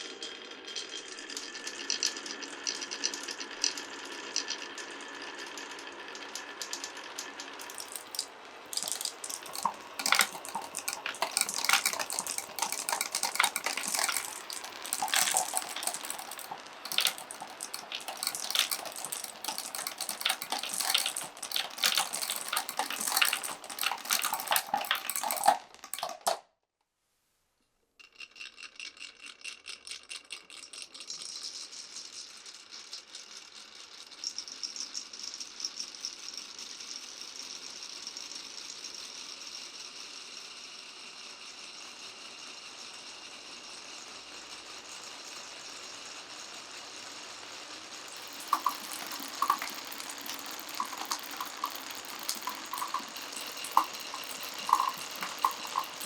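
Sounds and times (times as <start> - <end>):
marbles clicking and clattering: 7.6 - 26.4, 48.1 - 56.0
marbles rolling on wooden track: 7.6 - 26.4, 48.1 - 56.0.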